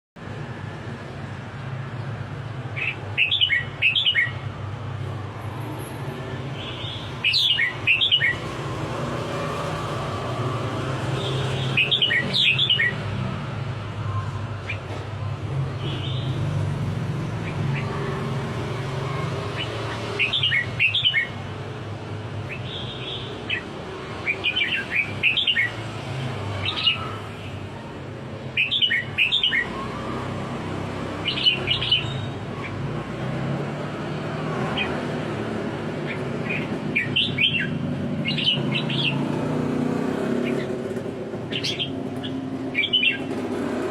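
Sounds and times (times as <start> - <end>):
bird singing warbled phrases: 2.6 - 4.5, 6.6 - 8.6, 11.0 - 13.0, 17.2 - 21.6, 22.4 - 27.9, 28.5 - 32.8, 34.6 - 43.5.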